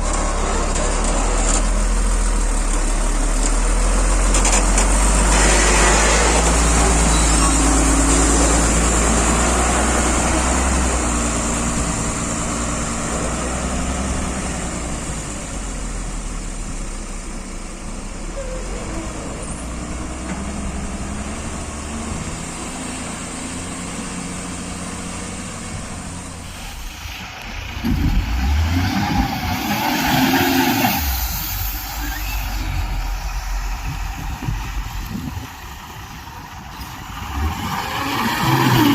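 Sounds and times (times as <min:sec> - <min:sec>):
heavy diesel engines running: 0:00.0 - 0:38.9
high hiss: 0:29.9 - 0:33.8.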